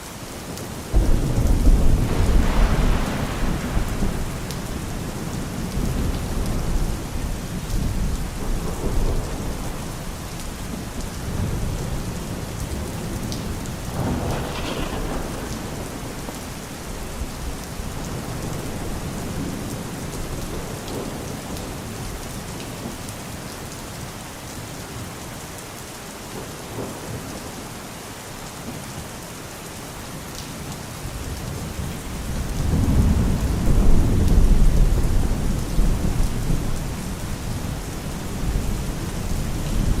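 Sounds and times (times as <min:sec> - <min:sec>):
steady rain falling: 0:00.0 - 0:40.0
low rumble of thunder: 0:00.9 - 0:22.2, 0:31.1 - 0:40.0.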